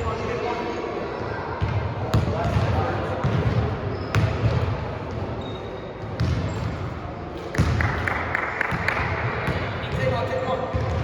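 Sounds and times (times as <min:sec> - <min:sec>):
basketball game noise: 0:00.0 - 0:11.0
basketball bouncing on gym floor: 0:01.6 - 0:05.2, 0:06.0 - 0:06.8, 0:07.5 - 0:11.0.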